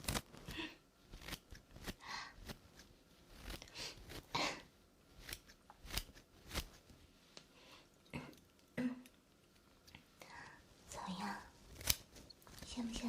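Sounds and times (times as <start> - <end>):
scissors snipping hair: 0.0 - 4.3, 5.1 - 6.9, 11.7 - 12.9.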